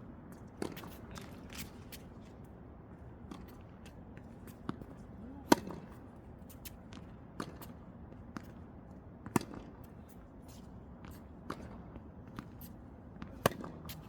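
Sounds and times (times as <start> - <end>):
tennis balls struck by rackets: 13.2 - 14.0.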